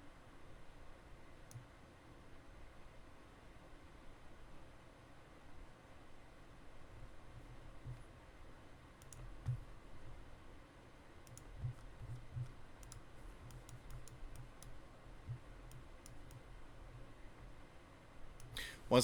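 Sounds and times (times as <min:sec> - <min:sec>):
computer mouse clicking: 0:01.5 - 0:01.7, 0:09.0 - 0:10.2, 0:11.2 - 0:17.0, 0:18.4 - 0:18.7.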